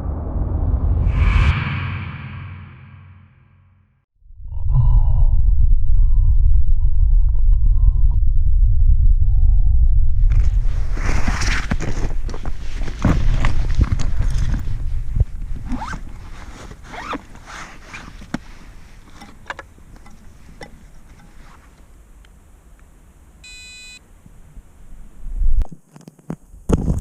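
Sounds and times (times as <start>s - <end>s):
wind-like rumble: 0.0s - 3.1s, 4.2s - 23.4s
handling noise rustling and clicking: 11.0s - 22.9s
short electronic beep: 23.4s - 24.0s.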